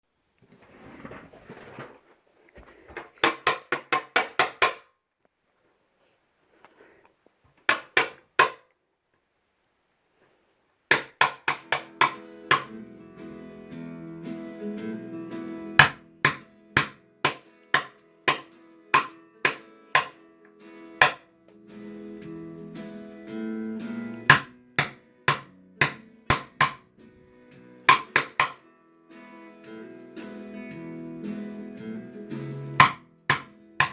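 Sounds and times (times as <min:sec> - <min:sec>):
sharp knocks: 0:07.7 - 0:08.6, 0:10.9 - 0:12.7, 0:15.8 - 0:20.2, 0:21.0 - 0:21.2, 0:24.3 - 0:26.8, 0:27.9 - 0:28.6, 0:32.8 - 0:33.9.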